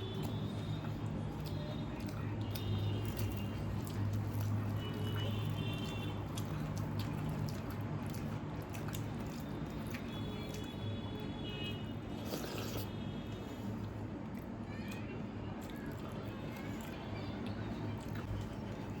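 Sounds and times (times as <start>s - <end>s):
person chewing food: 0.0s - 14.6s, 15.5s - 19.0s
wet mouth clicks: 12.2s - 12.9s.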